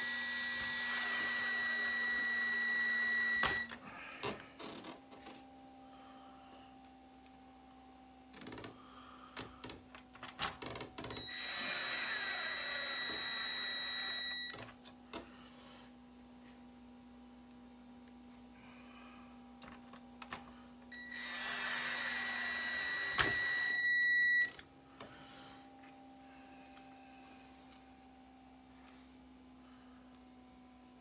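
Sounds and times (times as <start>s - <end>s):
electric screwdriver whine: 0.0s - 3.8s, 11.1s - 14.6s, 20.9s - 24.5s.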